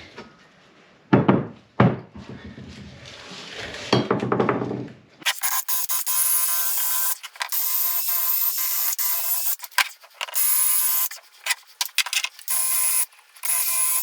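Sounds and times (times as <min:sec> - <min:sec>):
power tool whining and scrubbing: 0:05.3 - 0:14.0.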